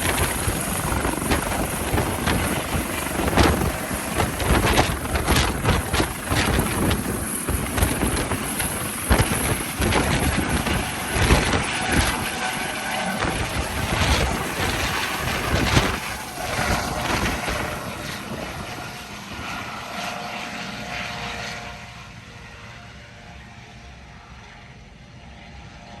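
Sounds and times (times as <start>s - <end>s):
helicopter rotor noise: 0.0s - 26.0s.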